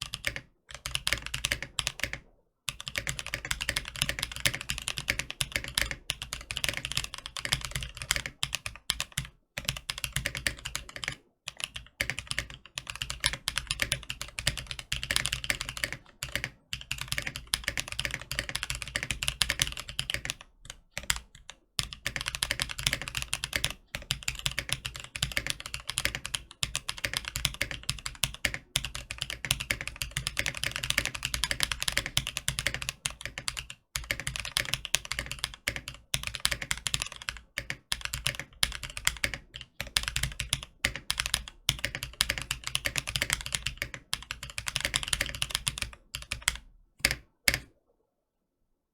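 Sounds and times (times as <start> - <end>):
mechanical keyboard typing: 0.0 - 47.7.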